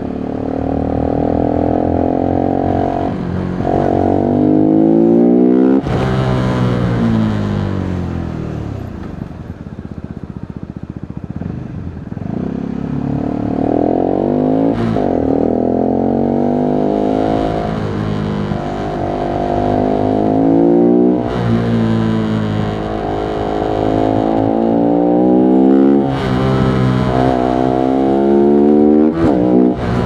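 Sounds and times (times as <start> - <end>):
motorcycle engine accelerating: 0.0 - 30.0.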